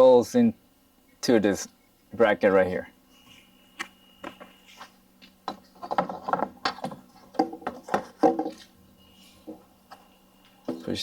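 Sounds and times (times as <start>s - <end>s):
plastic parts knocking and clicking: 5.5s - 8.6s.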